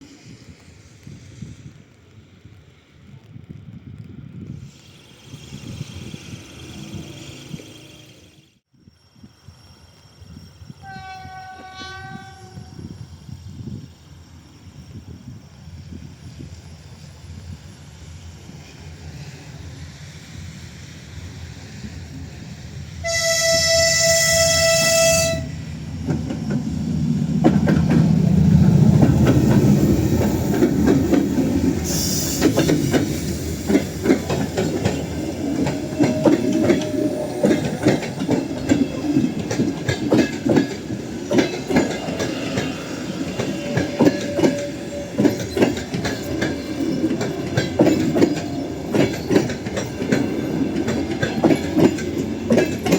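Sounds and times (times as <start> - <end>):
locomotive horn blast: 10.8 - 12.7, 23.0 - 25.7
train wheels clacking over rail joints: 25.9 - 52.9.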